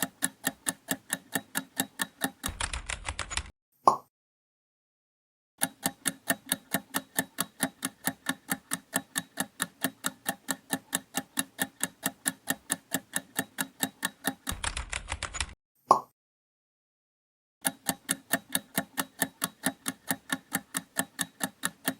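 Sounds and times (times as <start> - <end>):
countdown timer ticking: 0.0 - 3.2, 5.6 - 14.9, 17.7 - 21.9.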